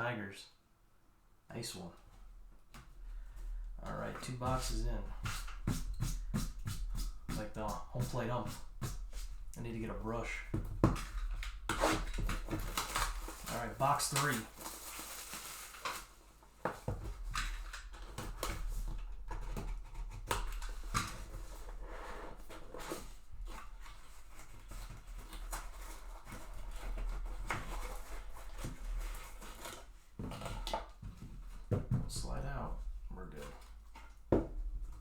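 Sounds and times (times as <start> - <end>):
cardboard and wrapping crinkling: 10.1 - 35.0.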